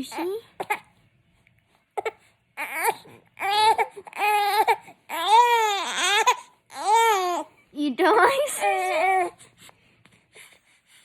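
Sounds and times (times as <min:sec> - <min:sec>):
baby making cry-like sounds: 0:02.0 - 0:07.5, 0:08.4 - 0:09.4.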